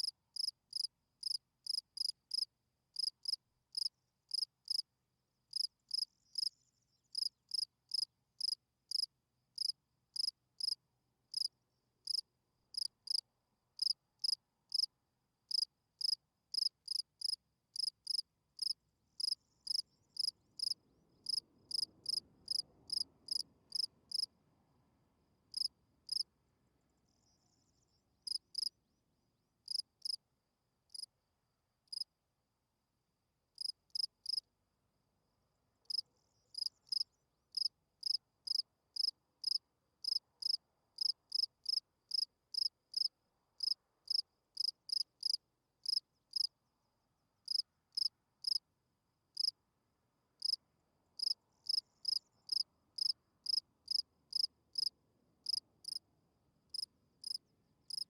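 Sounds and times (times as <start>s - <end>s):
cricket chirping: 0.0s - 4.9s, 5.5s - 13.2s, 13.8s - 14.9s, 15.5s - 24.3s, 25.5s - 26.3s, 26.9s - 28.8s, 29.6s - 30.2s, 30.9s - 31.1s, 31.9s - 32.1s, 33.6s - 34.5s, 35.8s - 46.5s, 47.5s - 48.6s, 49.4s - 49.6s, 50.4s - 50.6s, 51.2s - 56.0s, 56.7s - 58.0s.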